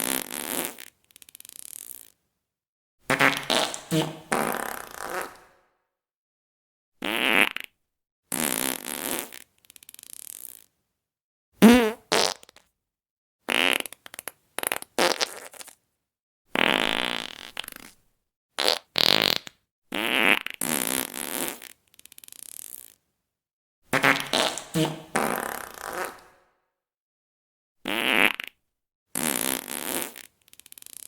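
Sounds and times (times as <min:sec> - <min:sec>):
fart sound effects: 0:03.1 - 0:05.6, 0:07.0 - 0:07.7, 0:11.6 - 0:12.6, 0:13.5 - 0:15.8, 0:16.6 - 0:17.9, 0:24.0 - 0:26.4, 0:27.9 - 0:28.6.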